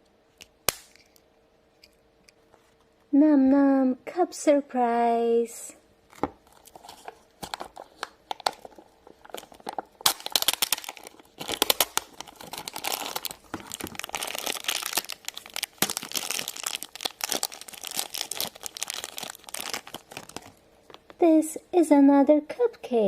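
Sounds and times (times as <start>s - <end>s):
plastic packaging torn and crinkled: 6.1s - 21.1s.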